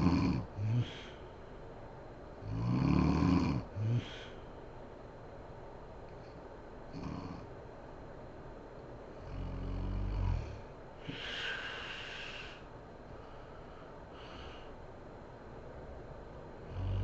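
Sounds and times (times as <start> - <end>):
woman snoring: 0.0 - 1.2, 2.4 - 4.4, 7.0 - 7.4, 16.6 - 17.0
breathy exhale: 0.6 - 1.5, 3.8 - 4.6, 11.0 - 14.8.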